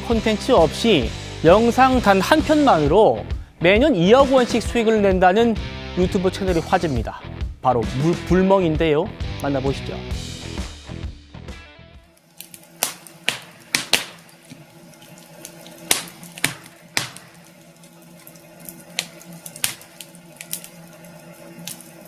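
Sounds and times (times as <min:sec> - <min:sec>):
logs crackling and popping: 0:12.1 - 0:22.0
faint steady hum: 0:12.2 - 0:22.0.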